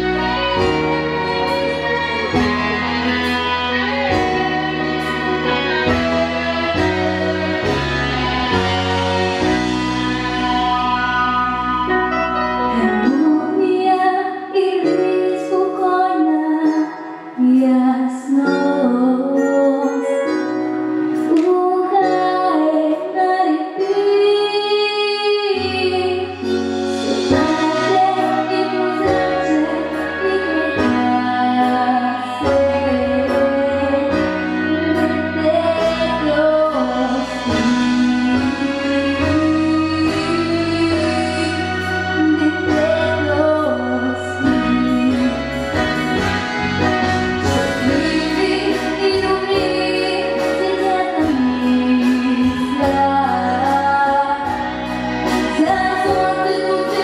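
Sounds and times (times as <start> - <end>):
deep bass line: 0.0 - 13.4
instrumental backing: 0.0 - 57.0
woman singing: 0.0 - 57.0.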